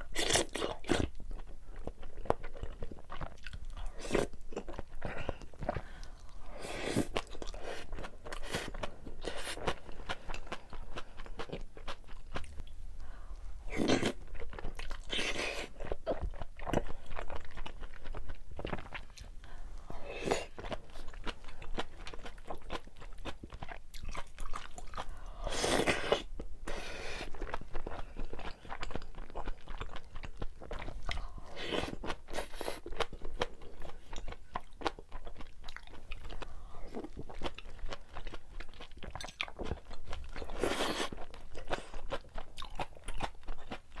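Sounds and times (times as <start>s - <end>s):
crunchy chewing and biting: 34.6s - 43.8s.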